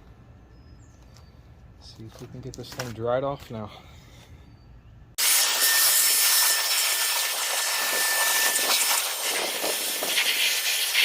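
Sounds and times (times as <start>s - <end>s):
air jet hissing: 5.2s - 11.0s.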